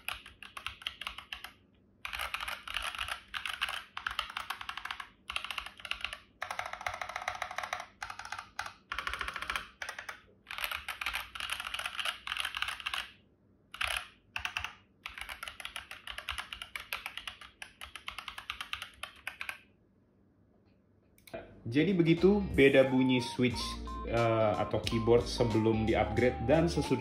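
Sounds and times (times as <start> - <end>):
mechanical keyboard typing: 0.0 - 19.7.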